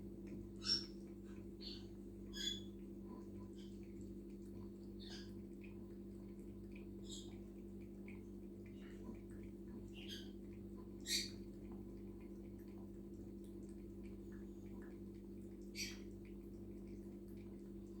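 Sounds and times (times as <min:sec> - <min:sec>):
low electrical hum: 0:00.0 - 0:18.0
small animal squeaks: 0:00.6 - 0:01.0, 0:01.6 - 0:02.7, 0:10.0 - 0:10.4, 0:11.0 - 0:11.4, 0:15.8 - 0:16.1.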